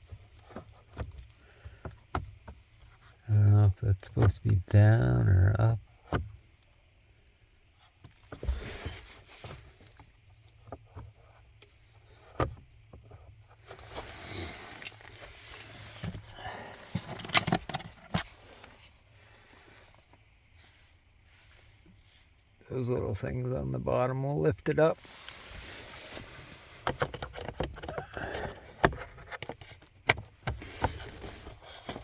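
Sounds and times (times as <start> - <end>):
plastic rustling and scraping: 7.9 - 22.6, 25.0 - 32.0.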